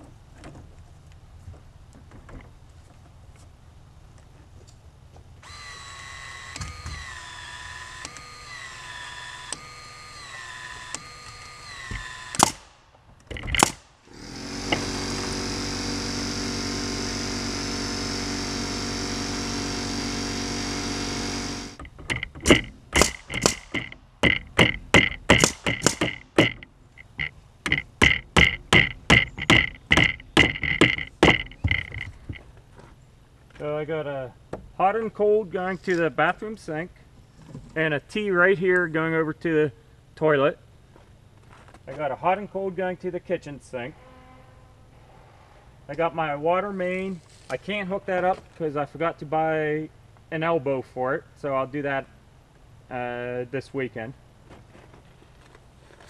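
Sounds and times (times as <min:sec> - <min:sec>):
power tool motor running: 0:05.4 - 0:12.6, 0:13.4 - 0:32.4
quick sharp clicks: 0:21.8 - 0:32.0.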